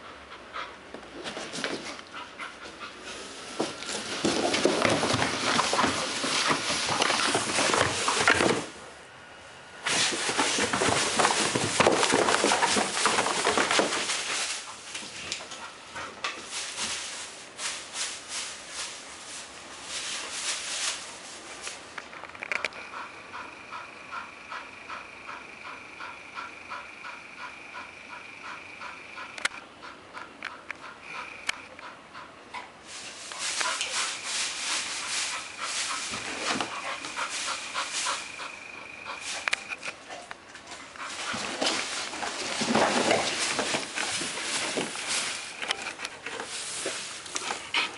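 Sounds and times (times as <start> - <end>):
puppy scratching cardboard box: 3.6 - 8.7, 9.9 - 14.8.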